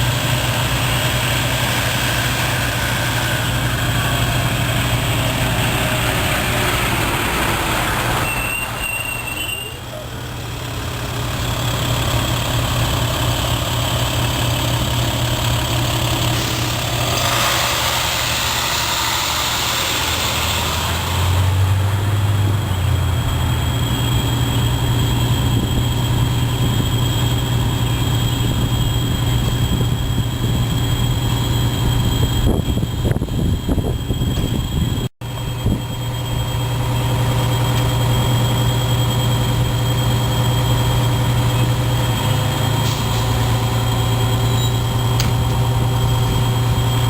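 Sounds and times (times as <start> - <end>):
diesel truck engine idling: 0.0 - 47.0
hissing rush: 36.6 - 47.0.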